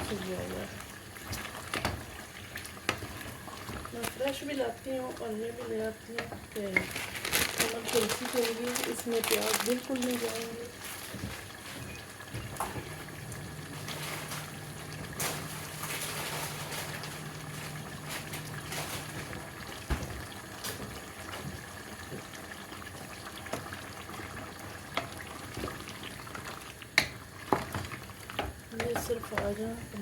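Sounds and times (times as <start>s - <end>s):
water bubbling at the boil: 0.0s - 30.0s
low steady hum: 11.9s - 20.3s.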